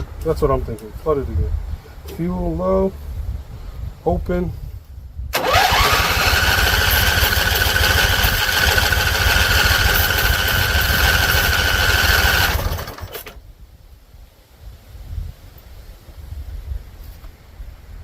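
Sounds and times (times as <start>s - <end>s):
mower engine whining: 5.3s - 13.4s.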